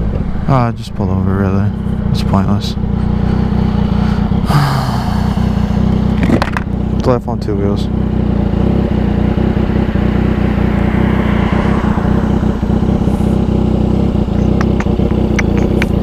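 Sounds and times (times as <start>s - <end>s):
motorcycle engine droning: 0.0s - 16.0s.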